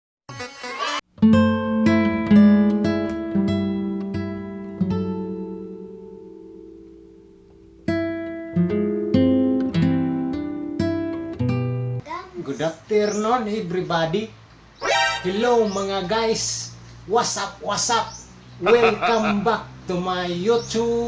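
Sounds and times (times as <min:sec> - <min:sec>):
acoustic guitar picking and strumming: 0:01.1 - 0:12.0.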